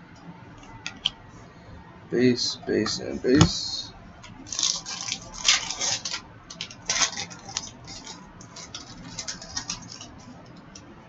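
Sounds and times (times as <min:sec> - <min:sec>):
trading cards and foil wrapper crinkling: 0:02.4 - 0:10.8.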